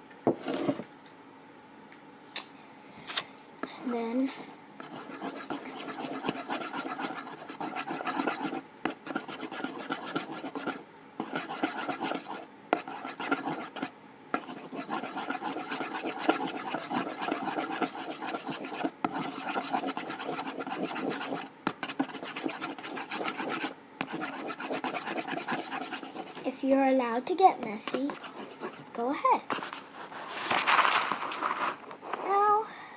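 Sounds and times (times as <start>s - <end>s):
stirrer scraping a container: 4.8s - 26.6s, 27.6s - 31.8s.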